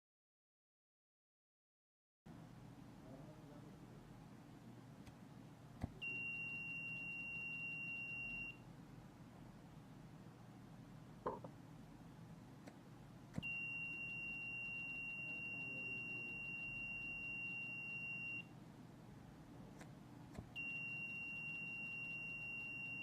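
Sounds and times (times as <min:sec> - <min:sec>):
high-pitched buzzer tone: 0:13.4 - 0:18.5, 0:20.6 - 0:23.0.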